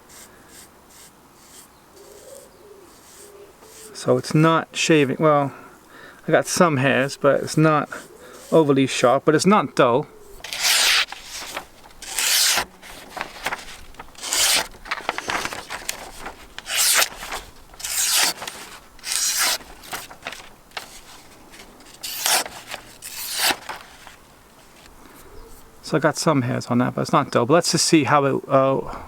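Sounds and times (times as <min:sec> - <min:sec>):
blade rasping across arm hair: 0:00.0 - 0:04.0, 0:10.4 - 0:12.7, 0:14.2 - 0:14.7, 0:16.6 - 0:20.1, 0:22.0 - 0:23.8.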